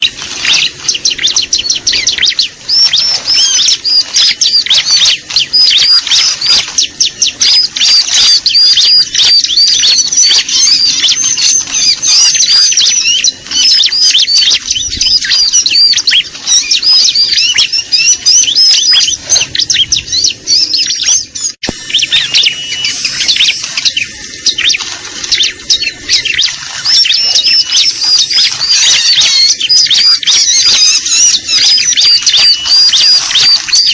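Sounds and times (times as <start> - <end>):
bird high chirping song: 0.0 - 33.9.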